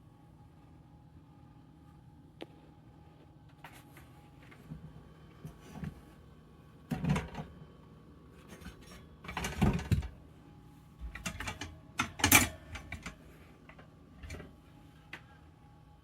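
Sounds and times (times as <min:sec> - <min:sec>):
shelf parts clattering and knocking: 0:08.5 - 0:10.1.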